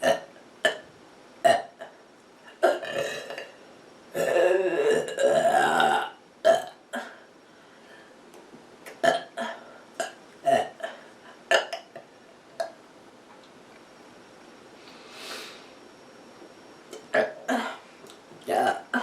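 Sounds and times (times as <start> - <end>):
person burping: 0.0 - 0.8, 1.4 - 1.9, 2.6 - 3.5, 4.2 - 7.3, 9.0 - 12.8, 17.0 - 17.8, 18.4 - 19.0.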